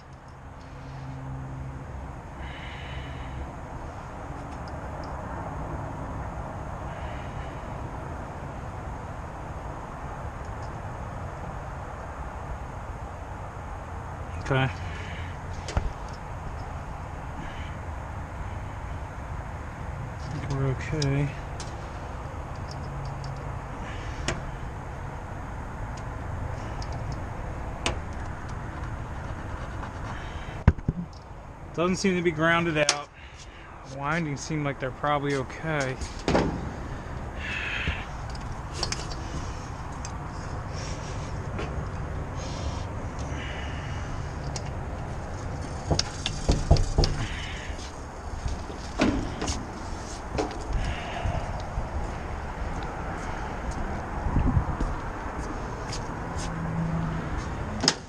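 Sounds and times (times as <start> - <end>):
low rumbling background noise: 0.0 - 58.0
tools clicking and knocking: 38.1 - 40.3, 45.4 - 50.8.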